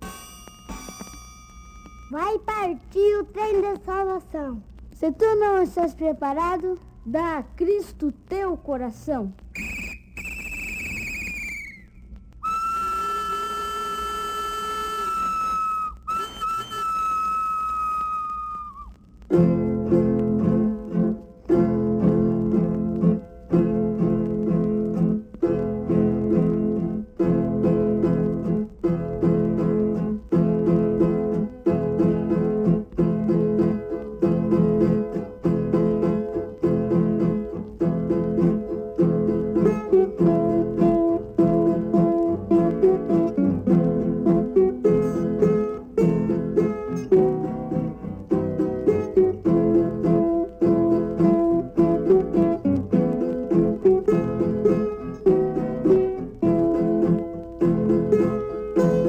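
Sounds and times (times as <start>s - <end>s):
plucked string melody: 0.0s - 2.3s, 19.2s - 59.0s
acoustic guitars strumming chords: 0.0s - 4.5s, 12.4s - 59.0s
train whistle blasts: 12.4s - 18.9s.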